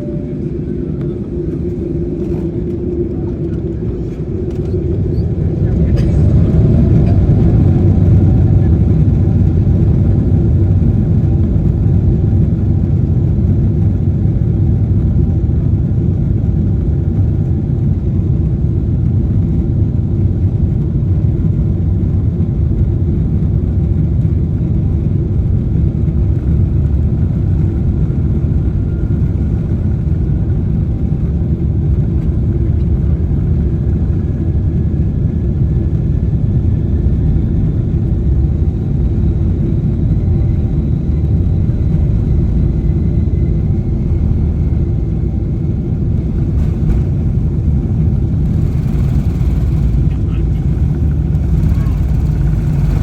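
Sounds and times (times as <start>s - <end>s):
faint rising whine: 0.0s - 5.4s
jet engines rumbling in cabin: 0.0s - 53.0s.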